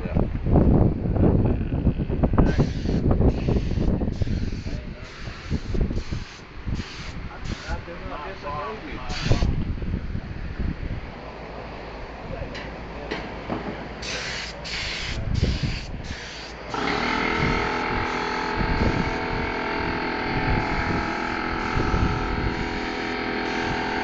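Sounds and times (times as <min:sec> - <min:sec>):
spray nozzle hissing: 0:02.5 - 0:07.8, 0:09.1 - 0:09.5, 0:14.0 - 0:19.8, 0:20.4 - 0:24.0
machine humming: 0:16.2 - 0:24.0.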